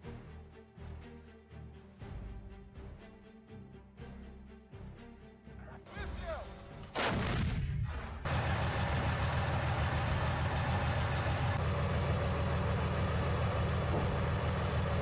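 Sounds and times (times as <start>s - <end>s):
heavy vehicle engine running: 8.2s - 15.0s.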